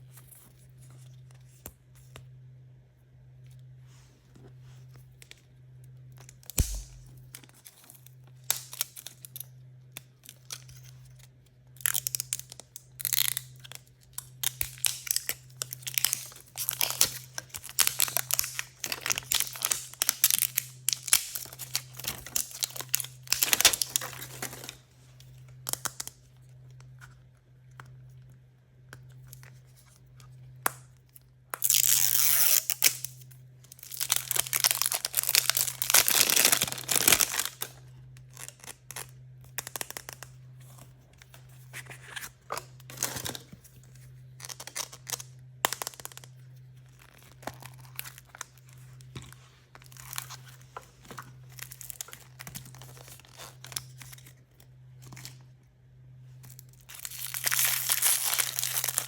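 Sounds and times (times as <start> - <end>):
packaging tearing and crinkling: 6.2 - 9.4, 11.8 - 24.8, 31.6 - 40.3, 41.5 - 54.4, 56.4 - 59.0.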